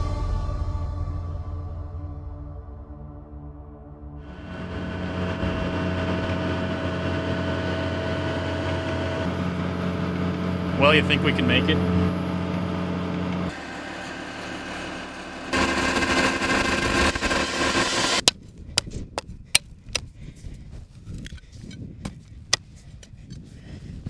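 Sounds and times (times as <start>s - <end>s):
vehicle engine running: 4.2s - 18.4s.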